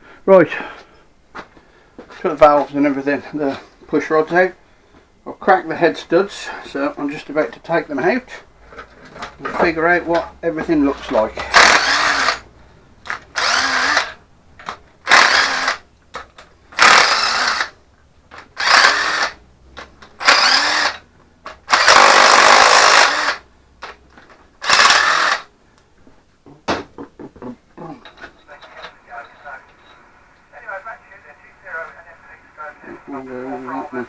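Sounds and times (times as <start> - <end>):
power tool spinning bursts: 11.5 - 12.4, 13.3 - 14.2, 15.0 - 15.8, 16.8 - 17.8, 18.6 - 19.4, 20.2 - 21.0, 21.6 - 23.5, 24.6 - 25.5.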